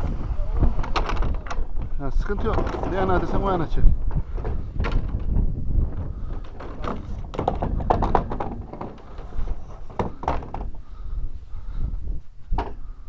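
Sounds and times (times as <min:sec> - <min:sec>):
irrigation pipes knocking: 0:00.6 - 0:11.2.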